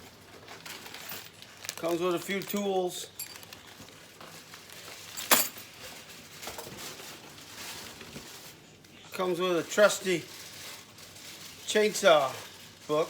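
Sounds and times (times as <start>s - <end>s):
packaging rustling: 0.0s - 13.0s.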